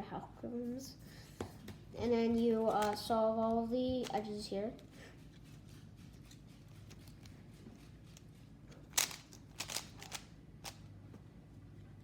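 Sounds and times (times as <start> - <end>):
plastic puzzle cube clicking: 8.9 - 10.2.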